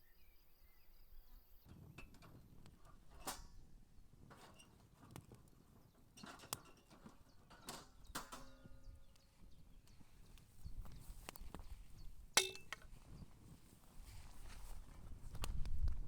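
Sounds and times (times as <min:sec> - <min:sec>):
cooking tools tapping: 0:12.4 - 0:12.9.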